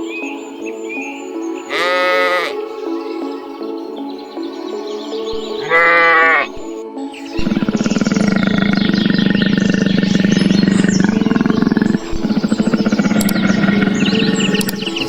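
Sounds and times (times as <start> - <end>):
large animal roaring: 1.7 - 2.6, 5.4 - 6.7, 7.4 - 15.0.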